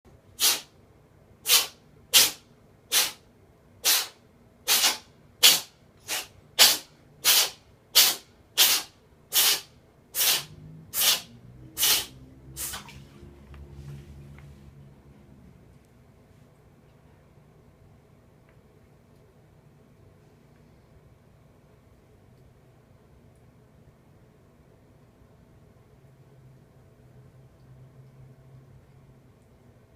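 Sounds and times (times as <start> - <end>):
cat sneezing: 0.4 - 0.8, 1.4 - 3.2, 3.8 - 13.0
faint low sounds: 10.6 - 29.9.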